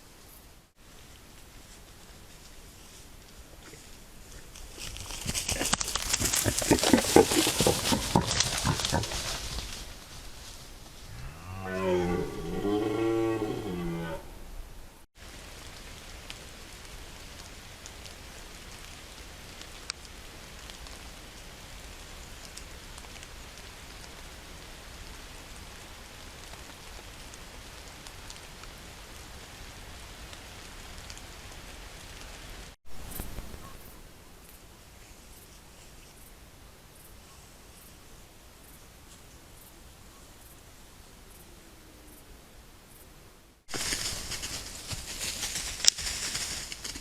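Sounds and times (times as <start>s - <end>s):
steady hiss: 14.4s - 47.0s.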